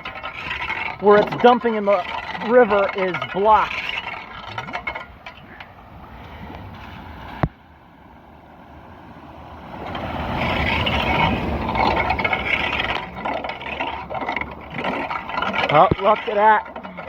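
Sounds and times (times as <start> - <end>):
vehicle splashing through floodwater: 5.8 - 13.3.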